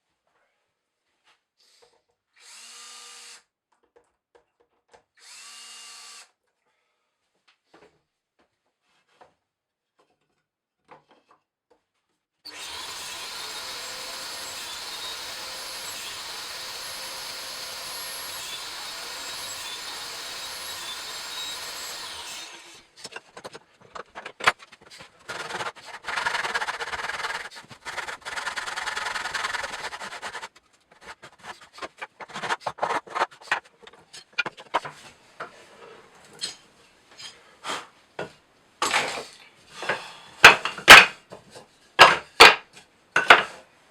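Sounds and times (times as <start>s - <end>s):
power tool running: 12.5s - 22.9s, 25.3s - 30.5s
rubbing on wood: 24.5s - 33.6s.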